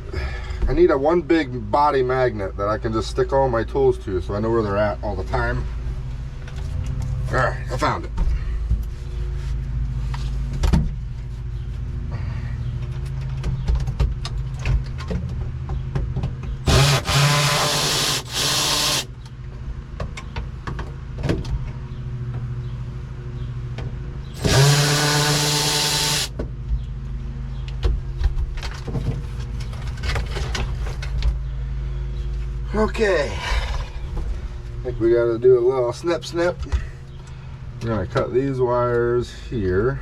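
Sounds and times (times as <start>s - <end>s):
steady low hum: 0.0s - 40.0s
handheld power tool running: 16.6s - 19.1s, 24.4s - 26.3s.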